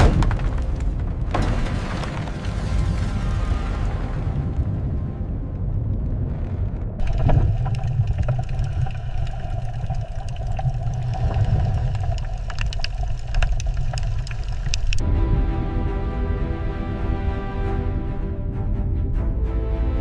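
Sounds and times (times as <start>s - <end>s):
clicks and ticks: 7.0s - 15.0s
music with sustained tones: 15.0s - 20.0s.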